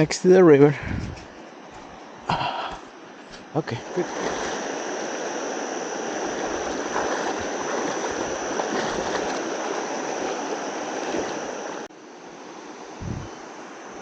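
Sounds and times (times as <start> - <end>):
river rushing over stones: 6.2 - 11.9.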